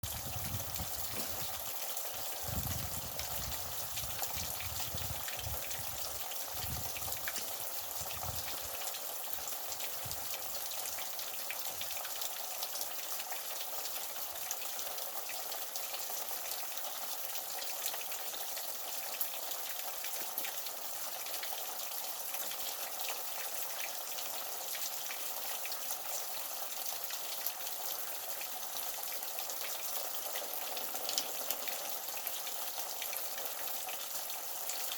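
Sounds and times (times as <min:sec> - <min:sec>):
water drips: 0:00.1 - 0:14.7.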